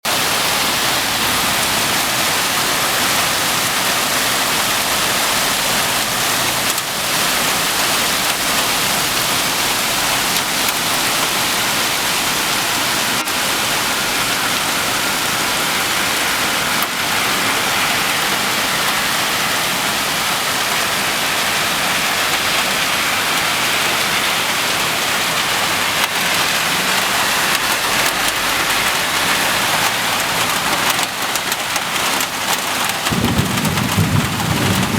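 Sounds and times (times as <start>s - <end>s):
heavy rain hissing: 0.1s - 34.9s
raindrops clicking: 26.0s - 34.9s.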